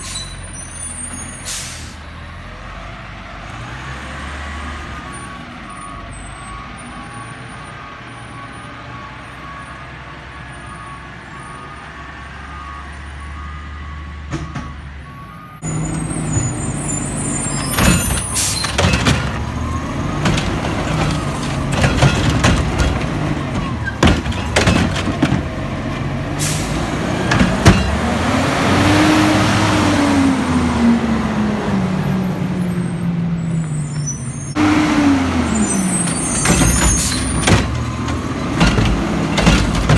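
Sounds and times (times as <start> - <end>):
garbage truck engine hum: 15.1 - 39.9
clattering knocks and bangs: 15.7 - 28.3, 35.8 - 39.9.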